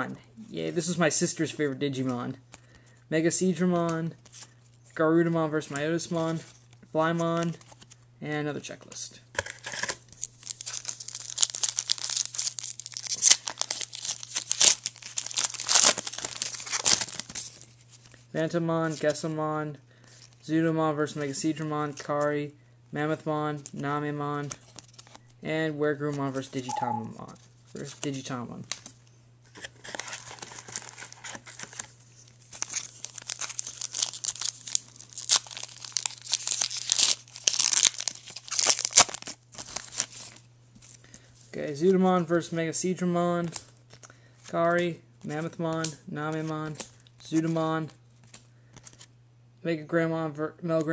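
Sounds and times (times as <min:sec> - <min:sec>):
wrapper torn and crinkled: 0:09.4 - 0:17.8, 0:29.8 - 0:40.5.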